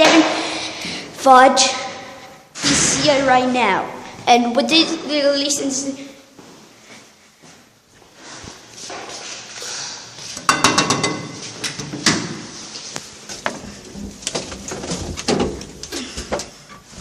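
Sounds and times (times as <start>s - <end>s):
knocks and rattles: 13.4s - 16.9s.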